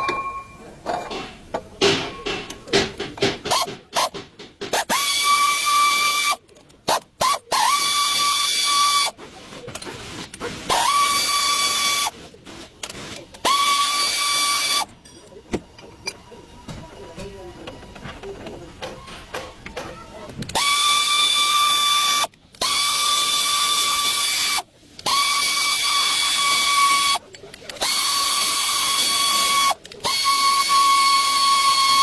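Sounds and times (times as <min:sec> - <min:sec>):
tools clanking on metal: 0:00.0 - 0:04.8
pneumatic tool whining: 0:03.2 - 0:14.9, 0:18.8 - 0:32.0.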